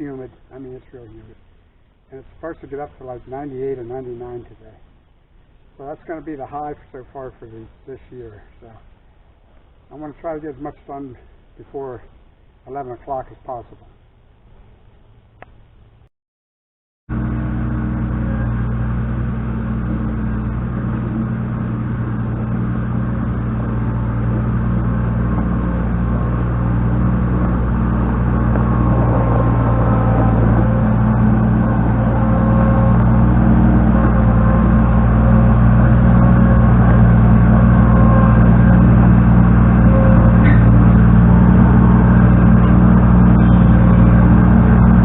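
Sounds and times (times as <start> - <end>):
large engine running: 17.1 - 45.0.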